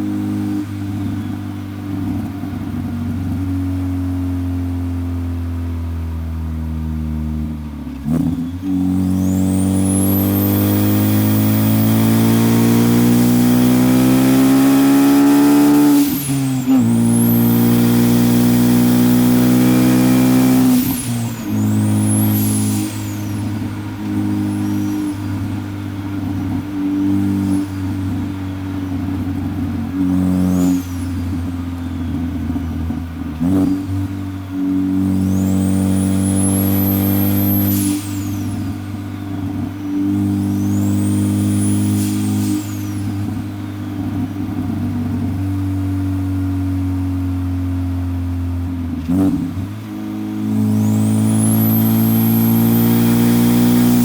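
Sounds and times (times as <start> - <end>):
car engine running: 0.0 - 54.0
high turbo whistle: 8.1 - 45.6, 49.2 - 54.0.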